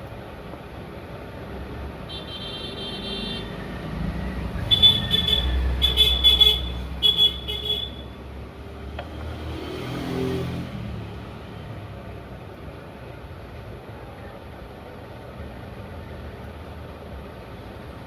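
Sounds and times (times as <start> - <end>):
car horn honking: 2.1 - 3.6, 4.7 - 8.2
vehicle rumbling past: 3.4 - 12.4.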